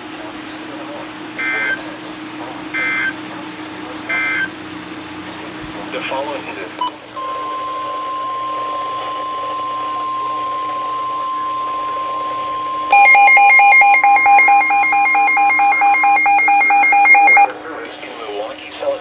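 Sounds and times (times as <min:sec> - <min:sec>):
steady warning tone: 0:01.4 - 0:03.3, 0:04.1 - 0:04.6, 0:06.1 - 0:17.5
rapid two-pitch alarm beeping: 0:07.2 - 0:17.5.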